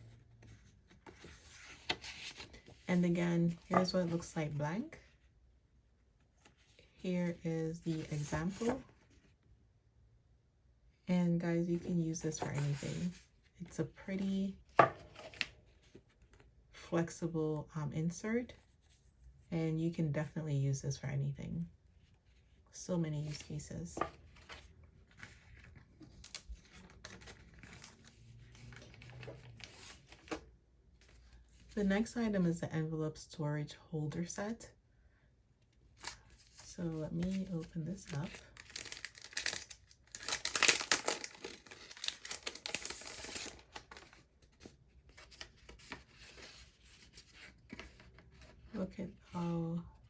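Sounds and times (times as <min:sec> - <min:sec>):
paper and packaging rustling: 0:36.0 - 0:48.6
packaging tearing and crinkling: 0:38.2 - 0:44.1.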